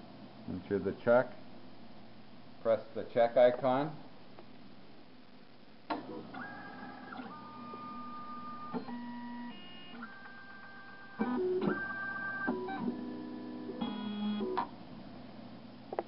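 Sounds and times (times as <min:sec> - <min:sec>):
machine motors whining: 0:06.0 - 0:14.7.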